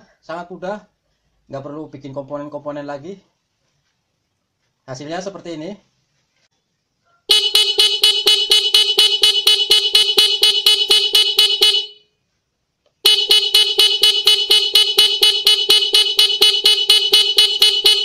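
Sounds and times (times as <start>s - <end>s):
motorcycle horn rapid beeps: 7.3s - 12.1s, 13.0s - 18.0s.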